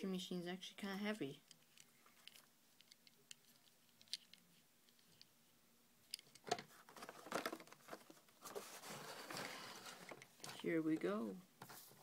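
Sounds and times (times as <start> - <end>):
plastic packaging crinkling: 6.7 - 10.6.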